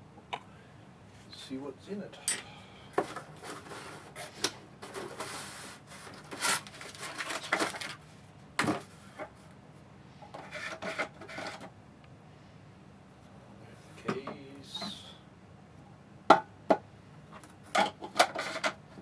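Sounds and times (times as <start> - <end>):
packaging rustling: 6.1 - 8.0.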